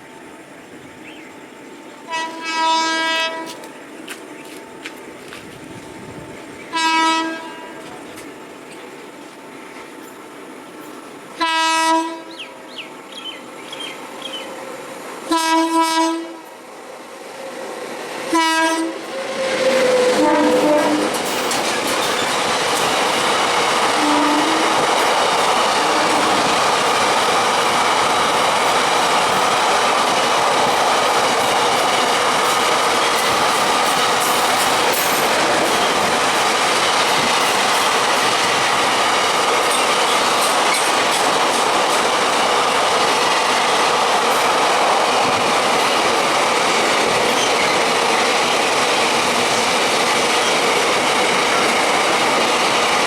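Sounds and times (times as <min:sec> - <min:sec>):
locomotive horn blasts: 0:02.1 - 0:03.6, 0:06.7 - 0:08.0, 0:11.4 - 0:12.4, 0:15.3 - 0:16.5, 0:18.3 - 0:19.1, 0:19.9 - 0:21.2, 0:24.0 - 0:24.8
train wheels clattering over rails: 0:03.4 - 0:06.1, 0:16.4 - 0:53.0.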